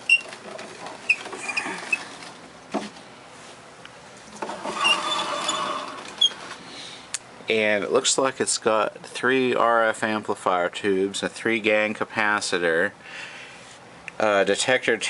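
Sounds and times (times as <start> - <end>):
scraping rubbing noise: 4.4 - 6.6.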